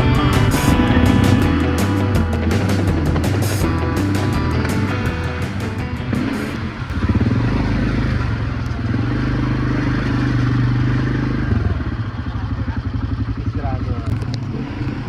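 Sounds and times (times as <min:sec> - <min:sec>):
atv engine running: 0:00.0 - 0:15.0.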